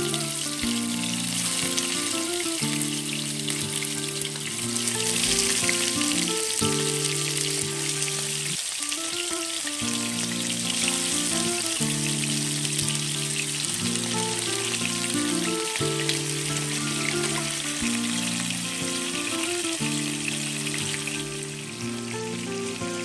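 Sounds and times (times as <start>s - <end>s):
background music of held chords: 0.0s - 23.0s
fish sizzling in hot oil: 0.0s - 23.0s.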